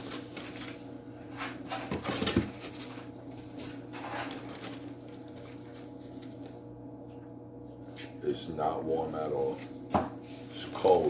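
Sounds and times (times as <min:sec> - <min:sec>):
packing material rustling: 0:02.0 - 0:06.6.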